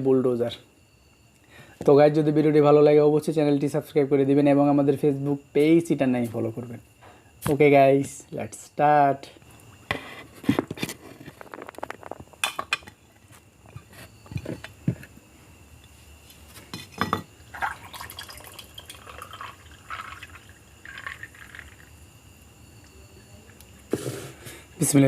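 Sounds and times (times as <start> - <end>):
plates and glassware clinking: 11.3 - 13.0, 16.7 - 17.3.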